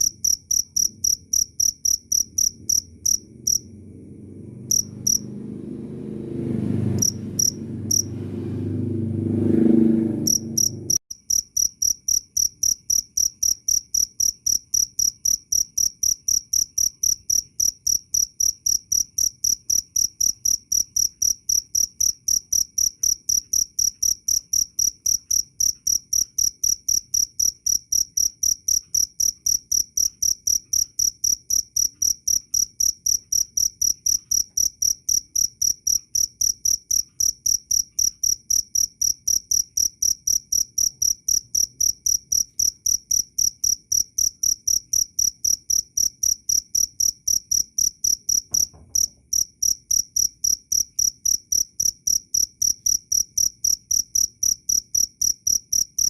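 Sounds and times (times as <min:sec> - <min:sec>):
cricket chirping: 0:00.0 - 0:05.3, 0:06.9 - 0:08.1, 0:10.2 - 0:56.0
faint low thud: 0:48.5 - 0:49.3.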